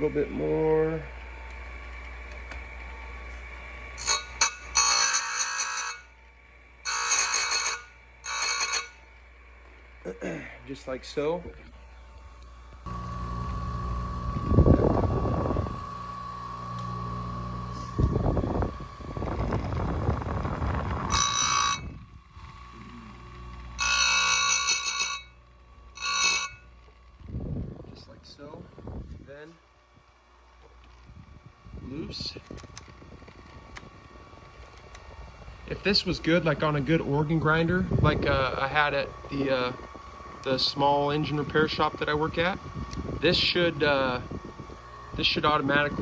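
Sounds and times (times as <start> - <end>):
chain grinder humming: 0.0 - 27.1
grinding wheel rasping squeal: 4.0 - 6.1, 6.8 - 9.1, 21.1 - 21.9, 23.8 - 26.7
bright metallic ringing: 4.0 - 6.2, 6.8 - 9.2, 21.1 - 22.0, 23.8 - 26.8.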